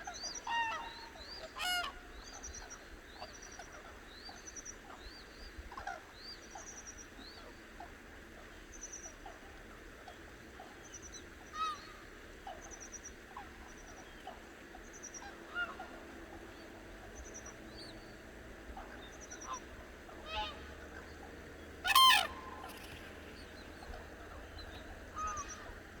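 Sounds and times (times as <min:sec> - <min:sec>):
cranes calling: 0:18.7 - 0:26.0.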